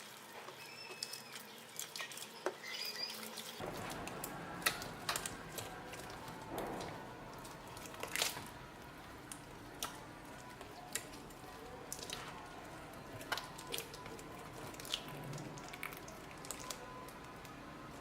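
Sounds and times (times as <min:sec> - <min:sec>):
slime being squished: 0:03.6 - 0:18.0.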